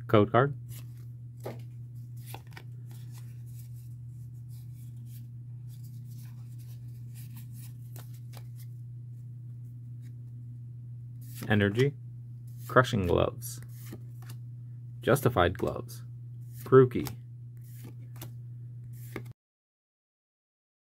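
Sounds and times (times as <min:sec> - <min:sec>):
steady low hum: 0:00.0 - 0:19.3
trading cards flipped by hand: 0:00.7 - 0:08.8, 0:11.2 - 0:14.4, 0:16.4 - 0:19.3.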